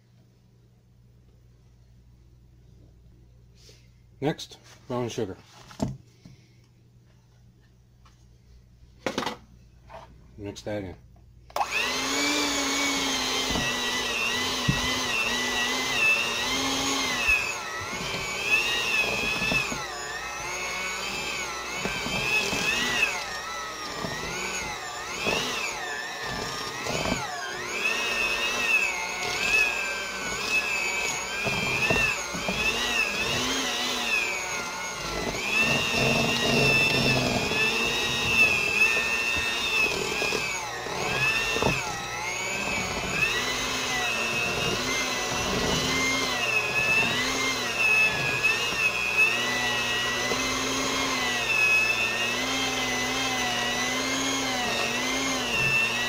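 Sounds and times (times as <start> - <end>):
electric mixer motor whine: 11.5 - 56.0.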